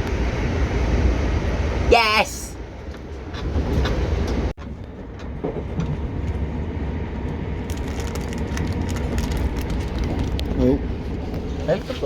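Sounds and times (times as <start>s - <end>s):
train wheels rumbling on rail: 2.6s - 12.0s.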